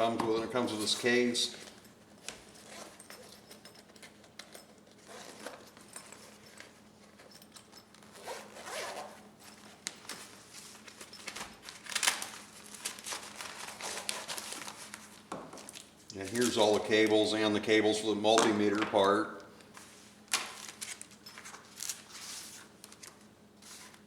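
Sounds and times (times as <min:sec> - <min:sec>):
zipper being pulled open: 0:05.0 - 0:05.7, 0:08.1 - 0:09.3, 0:13.7 - 0:14.5.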